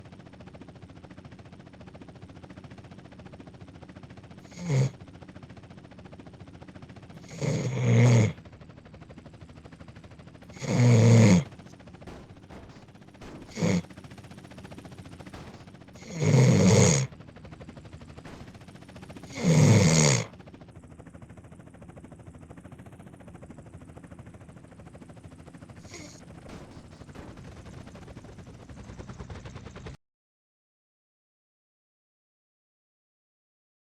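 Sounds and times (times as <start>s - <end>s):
loud snoring: 4.5s - 4.9s, 7.2s - 8.4s, 10.5s - 11.5s, 13.4s - 13.8s, 16.0s - 17.1s, 19.3s - 20.3s, 25.9s - 26.2s.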